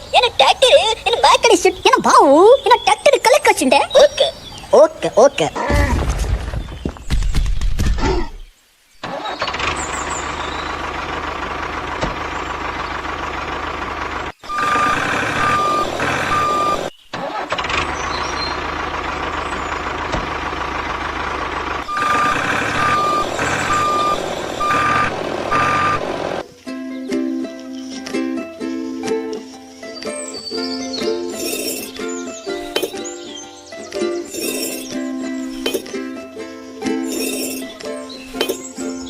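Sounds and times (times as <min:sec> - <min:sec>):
truck engine running: 0:09.1 - 0:26.4
reversing alarm beeping: 0:14.4 - 0:16.9, 0:21.9 - 0:26.4.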